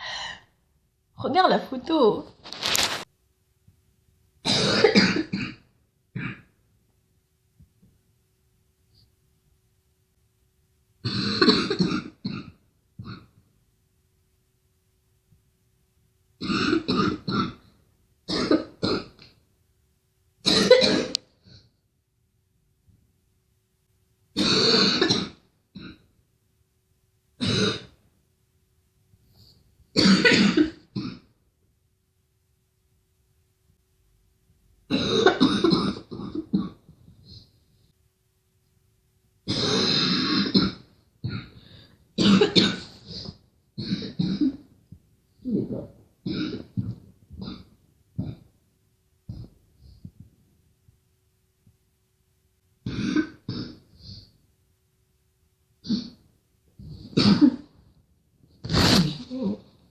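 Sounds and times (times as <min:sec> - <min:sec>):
girl coughing: 0:04.4 - 0:05.6, 0:20.5 - 0:21.2, 0:30.0 - 0:31.2, 0:34.9 - 0:36.8, 0:42.2 - 0:44.6, 0:56.9 - 0:57.7.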